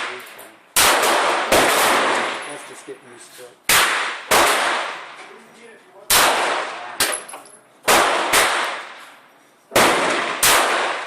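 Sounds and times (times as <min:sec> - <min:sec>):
pistol shots with ringing echo: 0:00.0 - 0:02.7, 0:03.7 - 0:05.2, 0:06.1 - 0:11.0.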